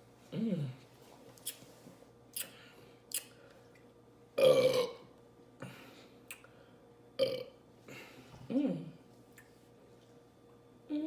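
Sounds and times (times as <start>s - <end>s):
woman burping: 4.4s - 5.1s, 7.2s - 7.6s.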